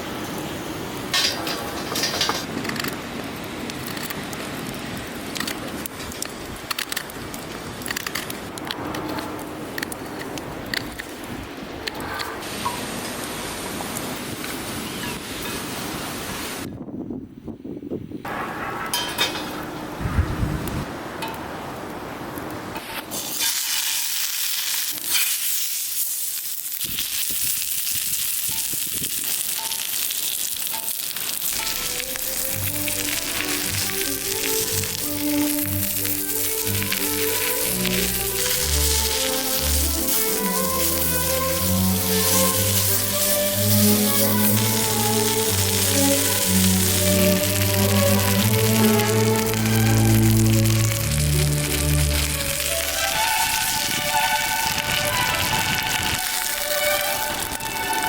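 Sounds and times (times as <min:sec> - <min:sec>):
wood fire crackling and popping: 0:01.0 - 0:12.8, 0:20.6 - 0:58.0
wind buffeting microphone: 0:16.6 - 0:19.0, 0:19.8 - 0:21.2, 0:53.4 - 0:56.4
strong wind rushing: 0:16.6 - 0:21.8
steady sizzling: 0:22.8 - 0:58.0.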